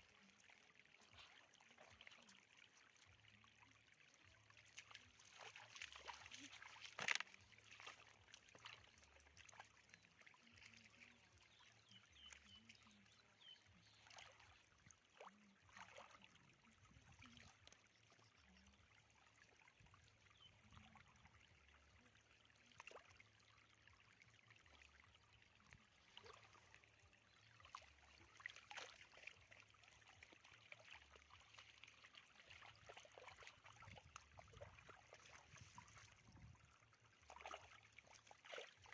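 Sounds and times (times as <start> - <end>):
shallow water splashing: 4.4 - 17.5, 25.8 - 38.9.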